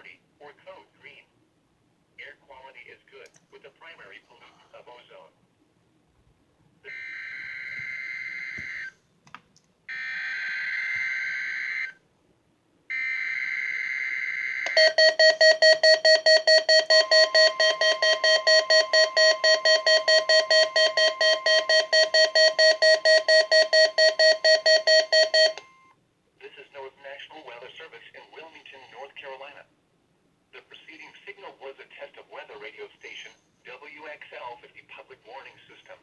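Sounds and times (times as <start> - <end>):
steady warning alarm tone: 13.0 - 25.9
rapidly pulsing alarm beep: 14.7 - 25.9.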